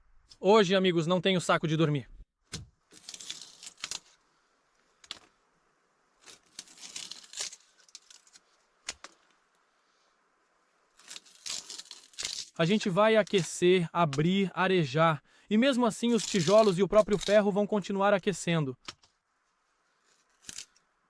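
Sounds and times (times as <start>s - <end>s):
rustling: 2.7s - 5.5s, 6.1s - 13.6s, 18.8s - 21.0s.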